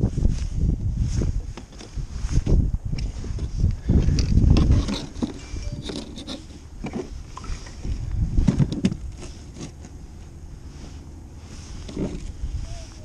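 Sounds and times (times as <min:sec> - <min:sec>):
thumps and knocks on a kayak: 0:08.4 - 0:09.0.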